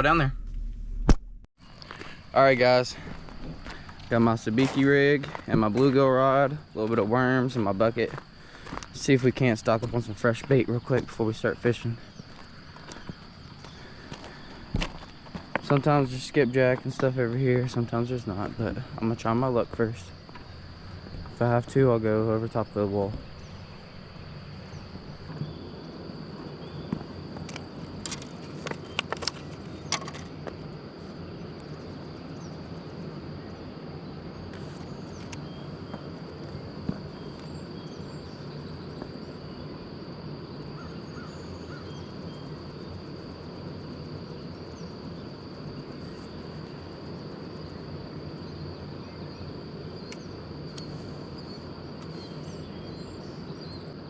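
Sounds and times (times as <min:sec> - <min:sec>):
insect chorus trilling: 0:00.0 - 0:00.3, 0:01.6 - 0:54.0
low rushing noise: 0:00.0 - 0:01.5.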